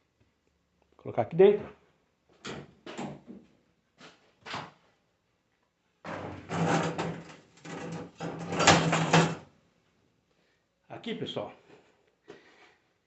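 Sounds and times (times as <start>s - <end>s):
clattering rustle: 6.1s - 9.4s
parts knocking and scraping: 6.1s - 9.4s.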